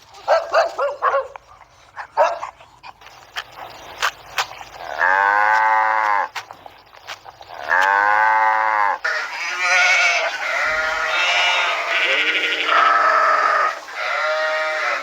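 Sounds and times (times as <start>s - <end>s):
livestock bleating: 4.8s - 6.3s, 7.6s - 15.0s.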